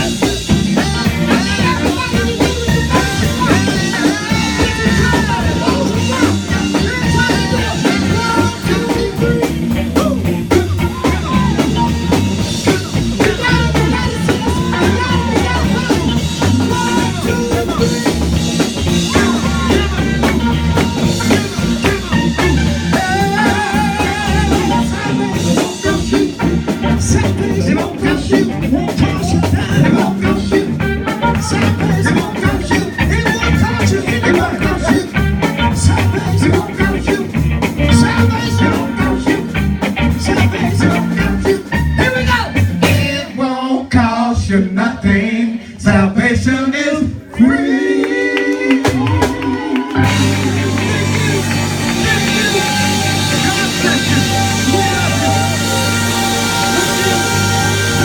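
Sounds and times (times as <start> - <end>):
gospel band music: 0.0 - 58.0.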